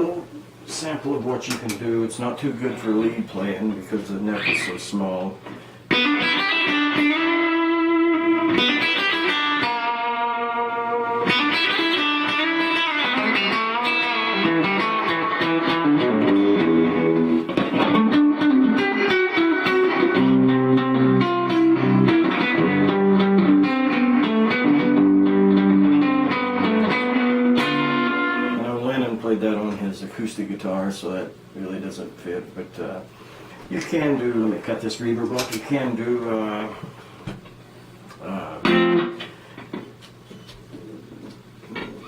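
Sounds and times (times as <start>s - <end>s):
electric guitar with reverb: 5.5s - 28.6s, 38.2s - 39.8s.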